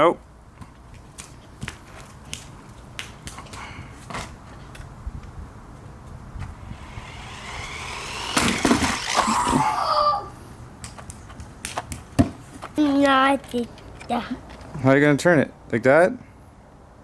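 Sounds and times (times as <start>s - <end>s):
toy car electric motor whining: 6.6s - 10.3s.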